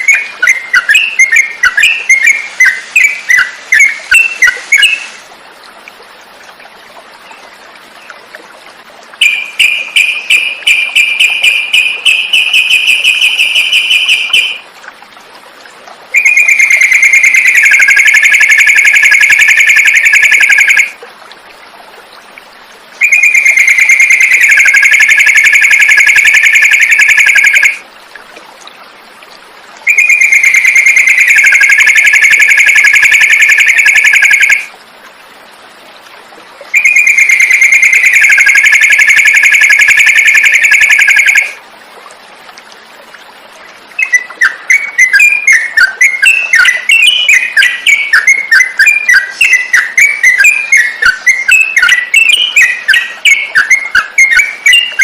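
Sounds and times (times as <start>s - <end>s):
bulbul song trilling: 0.0s - 5.2s, 9.2s - 14.7s, 16.1s - 21.0s, 23.0s - 27.8s, 29.8s - 34.7s, 36.7s - 41.6s, 44.0s - 55.0s.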